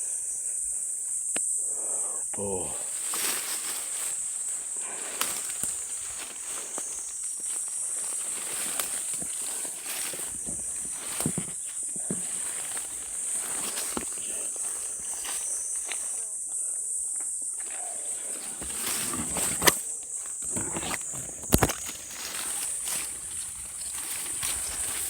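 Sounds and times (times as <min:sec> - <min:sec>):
digging tool knocking and scraping soil: 0:08.5 - 0:14.5, 0:17.7 - 0:25.0.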